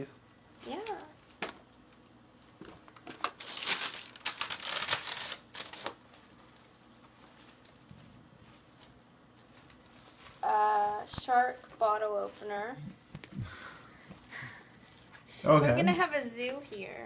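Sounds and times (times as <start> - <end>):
packaging crinkling and rustling: 3.1 - 12.4.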